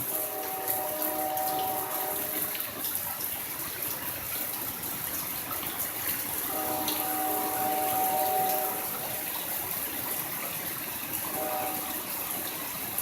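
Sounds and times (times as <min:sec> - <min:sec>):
locomotive air horn: 0:00.0 - 0:02.7, 0:06.5 - 0:09.4, 0:11.2 - 0:12.4
heavy rain pouring: 0:00.0 - 0:13.0.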